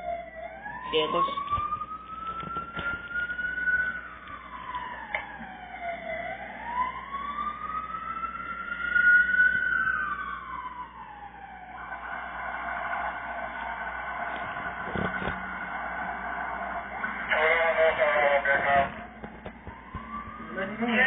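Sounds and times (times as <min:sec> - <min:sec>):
fire truck siren wailing: 0:00.0 - 0:21.0
steady blaring siren tone: 0:00.0 - 0:21.0.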